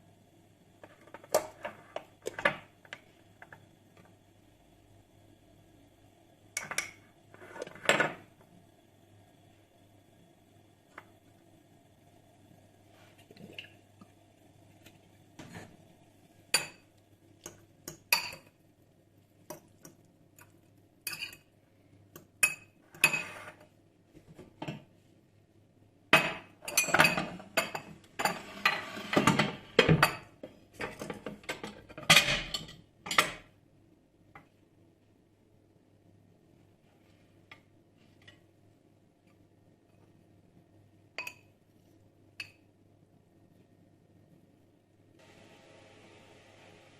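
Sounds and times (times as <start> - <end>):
dishes and cutlery clinking: 21.1 - 21.5, 26.2 - 33.4.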